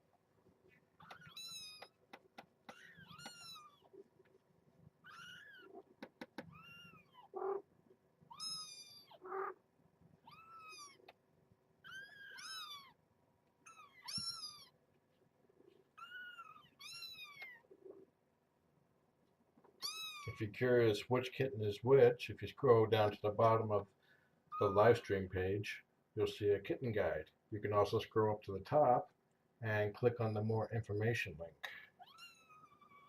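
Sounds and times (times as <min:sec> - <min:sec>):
kittens meowing: 0:01.0 - 0:02.0, 0:02.7 - 0:04.1, 0:05.0 - 0:07.7, 0:08.3 - 0:09.6, 0:10.2 - 0:11.2, 0:11.8 - 0:13.0, 0:13.6 - 0:14.8, 0:16.0 - 0:18.0, 0:19.8 - 0:20.4, 0:32.0 - 0:33.0.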